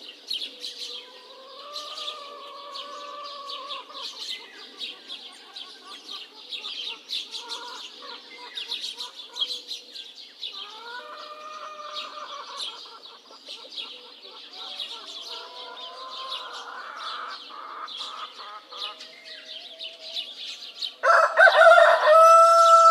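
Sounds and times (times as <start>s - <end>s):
small birds chirping: 0.0s - 22.9s
hens clucking: 1.1s - 9.5s, 10.6s - 19.1s
rooster crowing: 21.0s - 22.9s.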